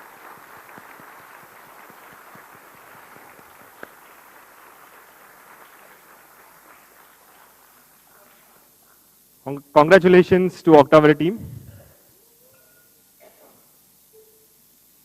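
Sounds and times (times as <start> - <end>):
audience applauding: 0.0 - 8.8.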